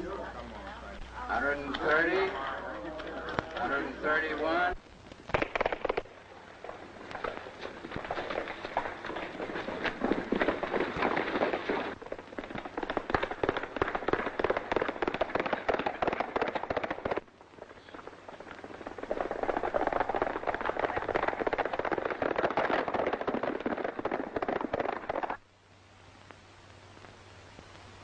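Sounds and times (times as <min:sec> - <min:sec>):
galloping horse hoofbeats: 0:06.6 - 0:25.4.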